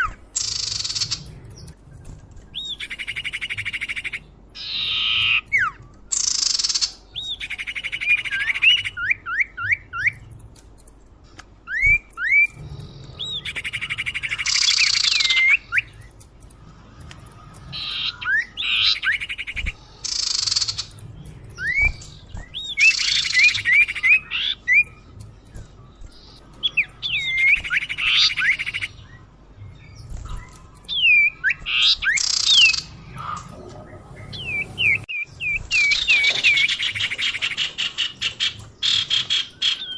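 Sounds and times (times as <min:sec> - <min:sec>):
bird harsh buzzy chatter: 0:12.2 - 0:29.3.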